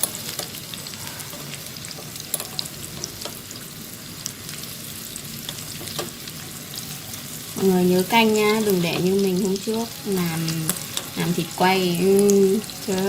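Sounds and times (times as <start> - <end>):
meat rolls sizzling in oil: 0.0 - 13.0
oil crackling and popping: 0.0 - 13.0.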